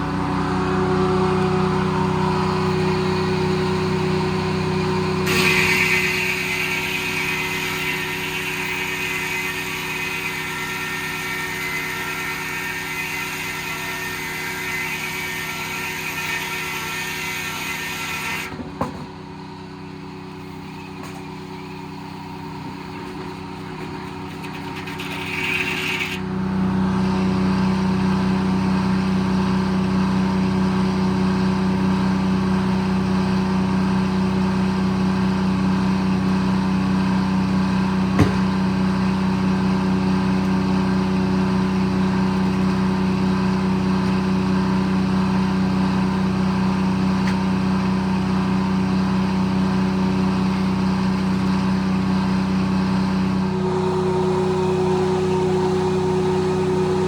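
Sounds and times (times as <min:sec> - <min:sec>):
diesel engine running: 0:00.0 - 0:12.5, 0:18.5 - 0:57.0
saw blade cutting log: 0:02.6 - 0:18.6, 0:23.6 - 0:26.3
knock: 0:38.2 - 0:38.4.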